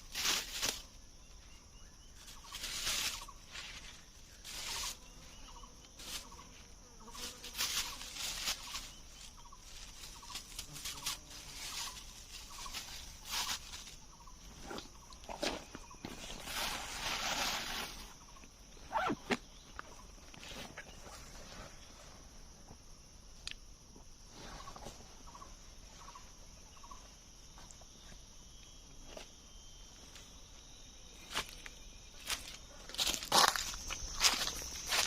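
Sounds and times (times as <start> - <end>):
rustling: 0.0 - 0.9, 2.2 - 5.1, 7.0 - 18.2
birds calling: 7.1 - 16.4.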